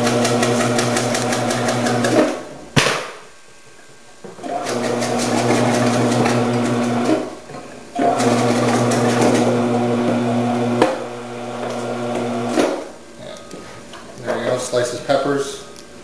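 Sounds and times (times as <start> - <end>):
vegetable processor motor humming: 0.0 - 2.2, 4.4 - 7.2, 8.0 - 12.6.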